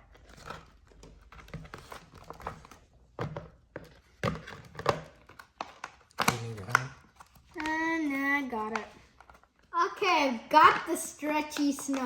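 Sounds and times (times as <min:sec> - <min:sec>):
packaging crinkling: 0:03.8 - 0:09.7
scissors snipping plastic: 0:04.8 - 0:06.9.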